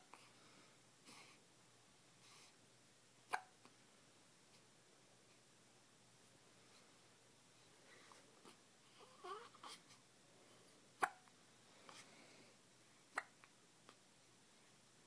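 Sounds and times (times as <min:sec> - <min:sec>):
faint small baby sounds: 0:03.2 - 0:03.8, 0:07.9 - 0:10.1, 0:11.0 - 0:11.3, 0:13.0 - 0:14.1
baby hiccuping: 0:03.3 - 0:03.6, 0:11.0 - 0:11.3, 0:13.1 - 0:13.4.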